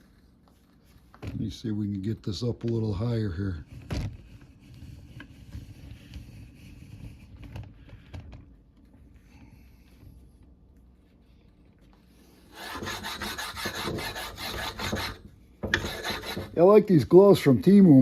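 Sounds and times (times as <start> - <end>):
sharpening stone rubbing on metal: 12.5 - 16.6
metal bar knocking: 13.7 - 16.6.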